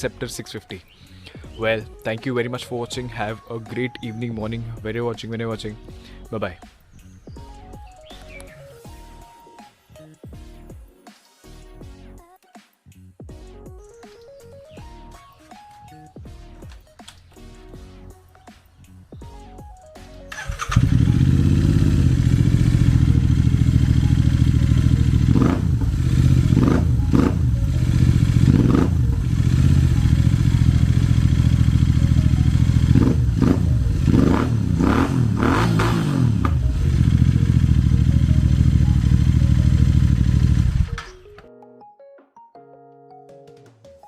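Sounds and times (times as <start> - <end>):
motorcycle engine idling: 20.3 - 41.0
throttle blips revving engine: 20.4 - 41.0.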